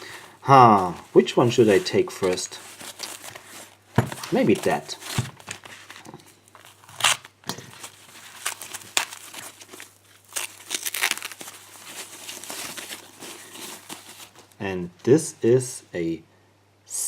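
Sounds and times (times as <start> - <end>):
packaging crinkling and rustling: 0.0 - 14.6.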